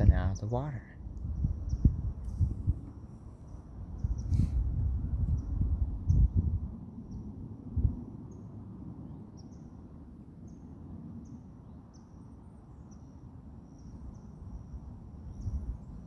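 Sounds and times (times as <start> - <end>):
steady low rumble: 0.0 - 6.8.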